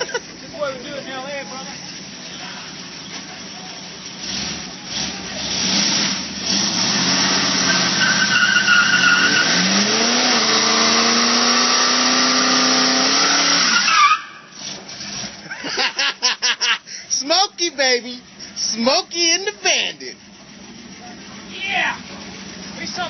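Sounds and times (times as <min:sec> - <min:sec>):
engine revving high: 0:04.2 - 0:14.0
tyre squealing: 0:05.4 - 0:15.4.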